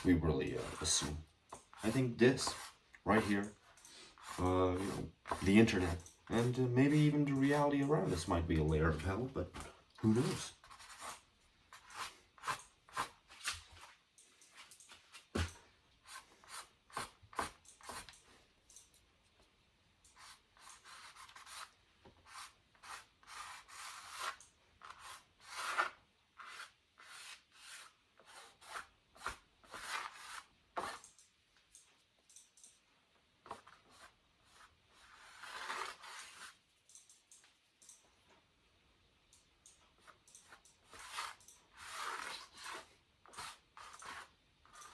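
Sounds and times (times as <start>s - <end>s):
paintbrush scrubbing on canvas: 0.0s - 8.3s, 20.2s - 31.0s, 33.5s - 36.7s, 40.8s - 44.9s.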